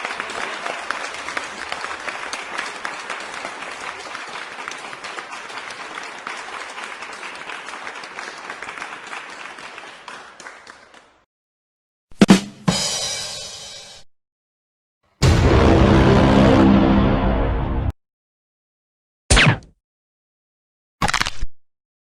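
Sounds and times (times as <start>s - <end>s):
crowd applause: 0.0s - 11.2s.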